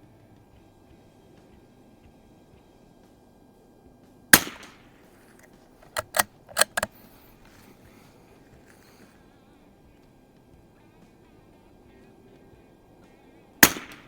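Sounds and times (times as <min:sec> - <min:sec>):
rifle shot: 0:04.4 - 0:04.9, 0:13.6 - 0:14.0
rifle bolt clicks: 0:04.4 - 0:07.7, 0:13.6 - 0:14.0.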